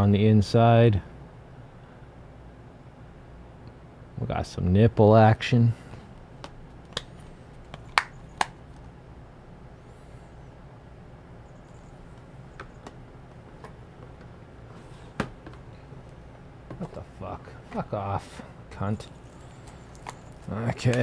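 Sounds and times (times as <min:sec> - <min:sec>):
low room hum: 0:00.0 - 0:21.0
plastic disc case clicks and taps: 0:06.4 - 0:08.9.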